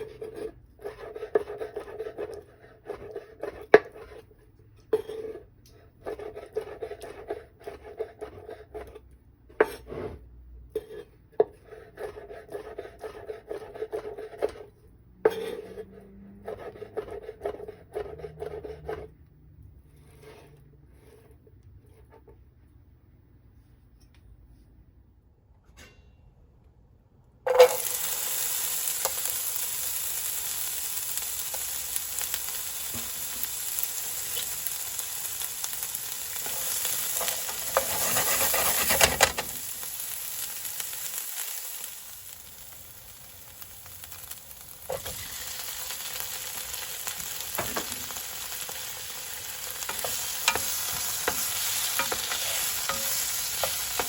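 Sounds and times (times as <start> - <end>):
utensil tapping and scraping: 0.0 - 19.1, 36.4 - 39.5, 49.8 - 54.0
food sizzling in hot oil: 27.5 - 54.0.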